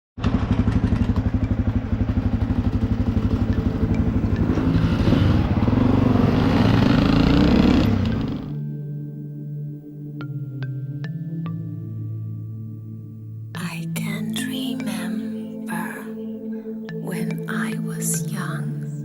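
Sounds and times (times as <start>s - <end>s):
off-road vehicle engine revving: 0.2s - 8.6s
soft sustained music: 1.0s - 19.0s.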